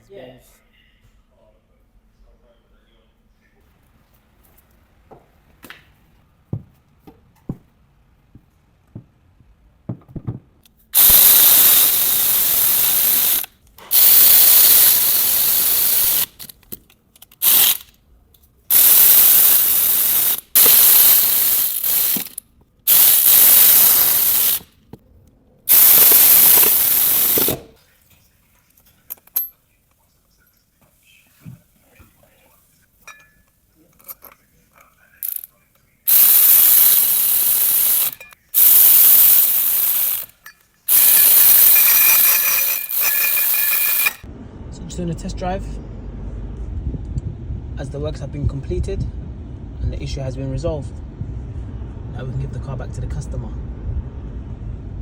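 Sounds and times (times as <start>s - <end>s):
pneumatic wrench bursts: 11.0s - 16.6s, 17.3s - 17.9s, 18.7s - 24.7s, 25.7s - 27.7s, 35.2s - 35.5s, 36.1s - 44.3s
hand tools clinking: 28.7s - 29.6s, 33.0s - 44.2s.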